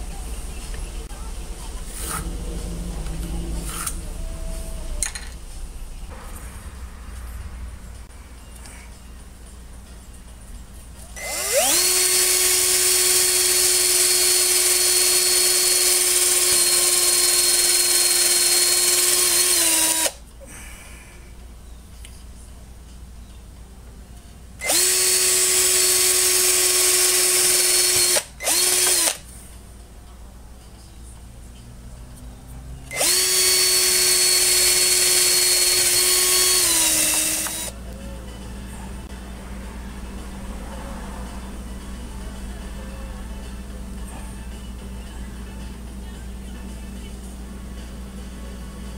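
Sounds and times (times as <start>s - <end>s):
power drill whining: 11.2s - 20.2s, 24.6s - 29.2s, 32.9s - 37.7s.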